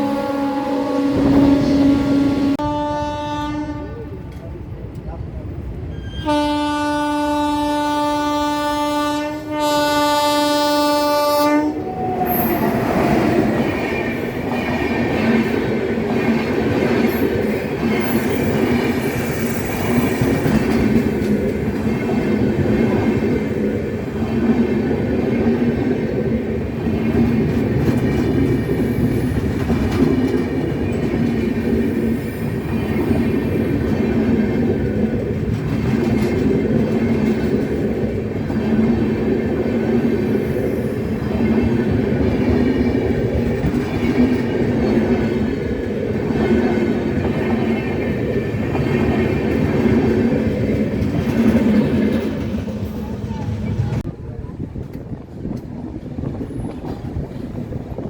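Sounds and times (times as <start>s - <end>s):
locomotive horn blasts: 0.0s - 4.1s, 6.1s - 12.0s
train wheels rolling: 11.0s - 58.0s.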